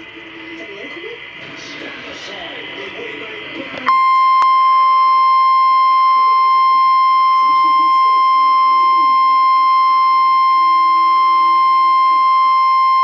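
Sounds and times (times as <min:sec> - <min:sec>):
high-pitched warning alarm tone: 0:03.9 - 0:13.0.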